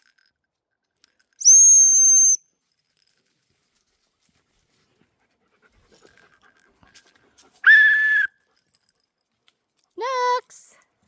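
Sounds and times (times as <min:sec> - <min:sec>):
dog whistle blast: 0:01.4 - 0:02.4, 0:07.6 - 0:08.3.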